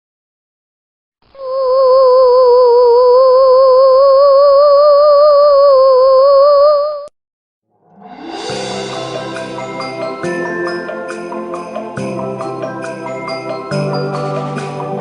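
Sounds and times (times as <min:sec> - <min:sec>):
tinkling bell-like music: 0:08.1 - 0:15.0.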